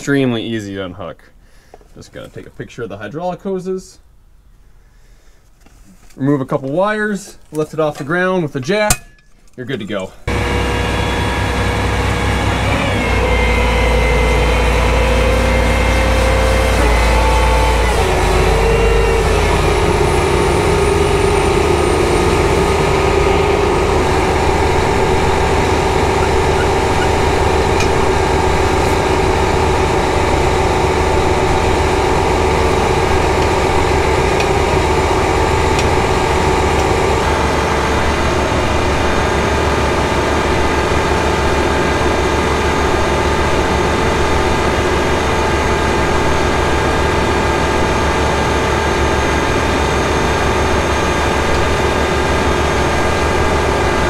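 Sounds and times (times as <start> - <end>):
tractor diesel engine running: 10.2 - 54.0.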